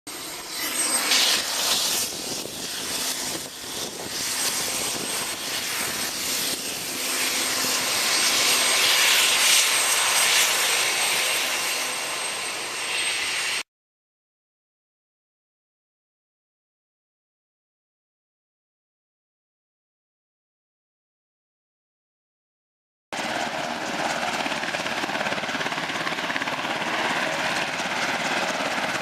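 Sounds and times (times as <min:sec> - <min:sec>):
helicopter turbine and rotor: 0:00.1 - 0:13.7, 0:23.2 - 0:29.0.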